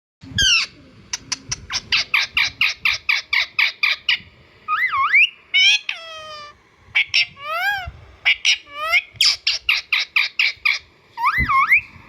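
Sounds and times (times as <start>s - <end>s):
parrot squawking: 0.4s - 11.8s
parrot warbling whistle: 4.7s - 11.8s.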